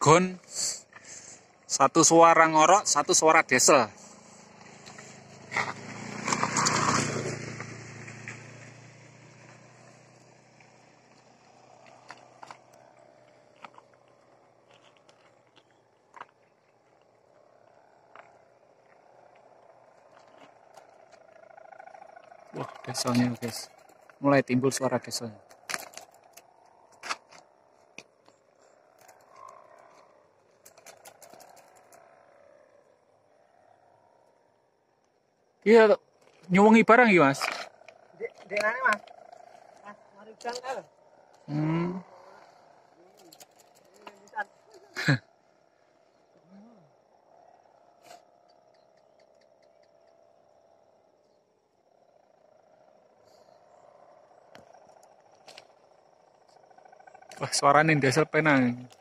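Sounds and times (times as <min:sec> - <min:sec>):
kite bowstring hummers droning: 0:07.6 - 0:24.2, 0:25.5 - 0:34.5, 0:43.8 - 0:57.4
scattered clicks: 0:25.4 - 0:32.2, 0:37.4 - 0:41.5, 0:43.0 - 0:44.8, 0:48.4 - 0:50.5
sharp clicks: 0:30.6 - 0:32.0, 0:48.4 - 0:50.2.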